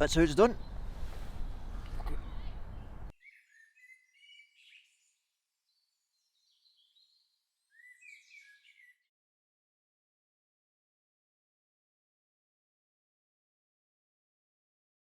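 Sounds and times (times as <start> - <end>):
faint songbirds chirping: 0.0 - 9.1.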